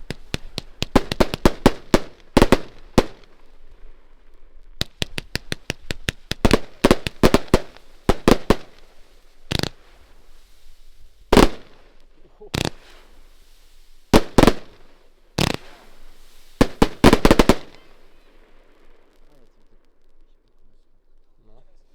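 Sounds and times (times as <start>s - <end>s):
firework battery bangs: 0.0s - 3.3s, 4.8s - 8.9s, 9.5s - 9.8s, 12.5s - 13.2s, 14.2s - 18.3s.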